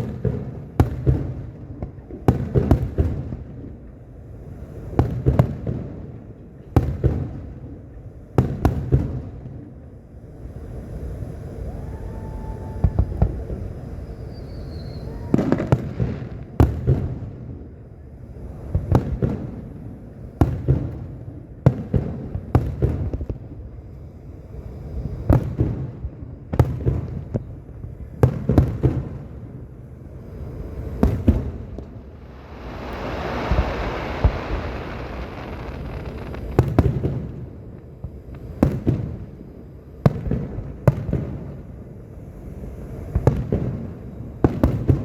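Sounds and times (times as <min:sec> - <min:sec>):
fireworks booming: 0:30.3 - 0:39.2.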